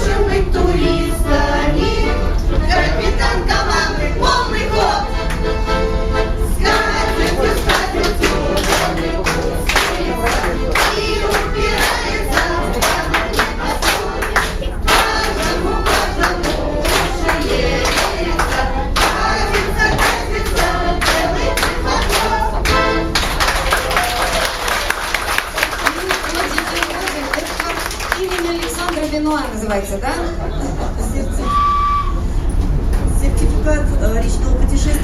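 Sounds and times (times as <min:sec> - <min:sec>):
group singing together: 0:00.0 - 0:23.6.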